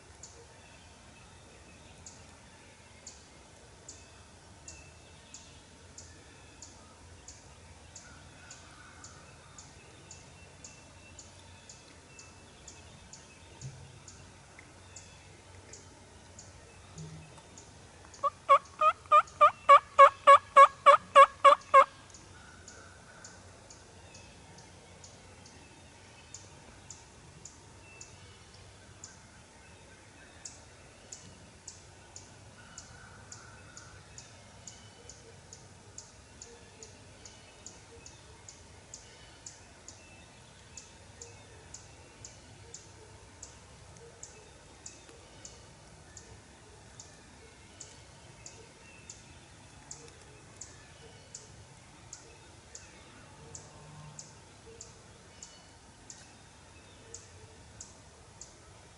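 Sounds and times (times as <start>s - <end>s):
turkey call yelps: 18.2s - 21.9s.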